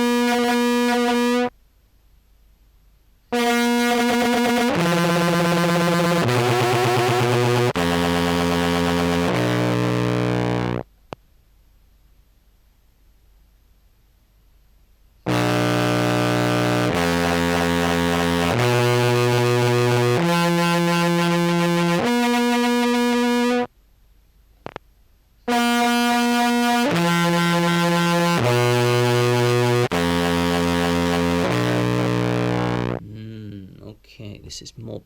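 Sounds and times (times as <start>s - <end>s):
distorted clarinet notes: 0.0s - 1.5s, 3.4s - 10.8s, 15.3s - 23.7s, 25.5s - 33.8s.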